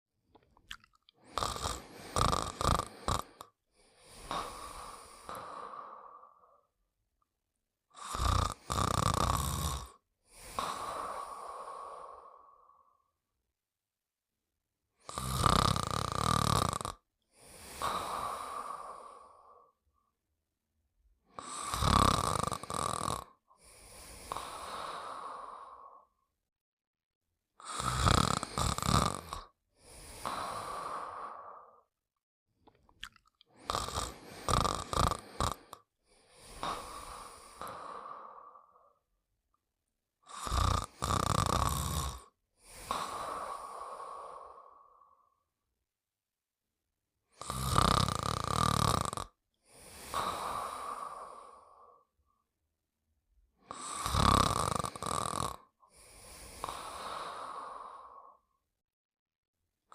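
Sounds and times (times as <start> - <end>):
cartoon character snoring: 1.2 - 6.6, 8.0 - 11.7, 15.0 - 19.8, 21.3 - 26.2, 27.6 - 31.9, 33.6 - 39.0, 40.3 - 45.3, 47.3 - 52.2, 53.6 - 58.6.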